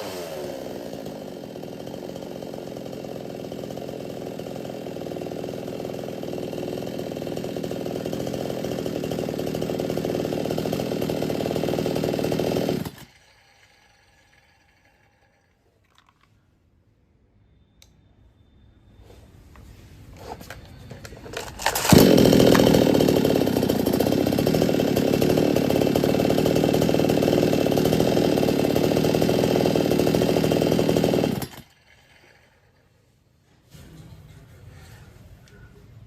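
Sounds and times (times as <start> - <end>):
chainsaw engine revving: 0.0 - 15.3, 21.3 - 32.6.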